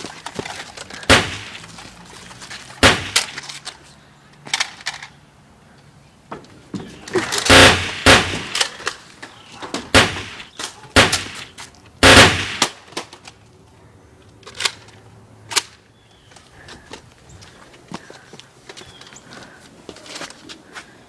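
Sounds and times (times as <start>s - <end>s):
gunshot-like bangs: 1.1s - 1.6s, 2.8s - 3.3s, 7.4s - 8.6s, 9.9s - 12.8s.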